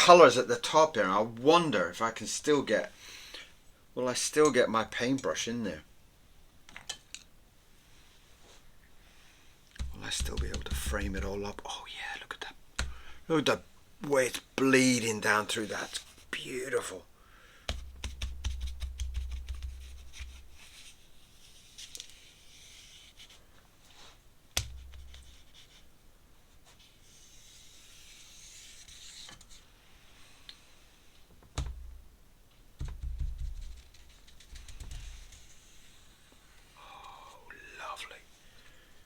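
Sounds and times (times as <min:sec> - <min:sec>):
small taps and clicks: 0:09.7 - 0:11.3, 0:17.7 - 0:20.4
brush strokes on paper: 0:19.4 - 0:24.2, 0:25.0 - 0:31.1, 0:33.6 - 0:36.8.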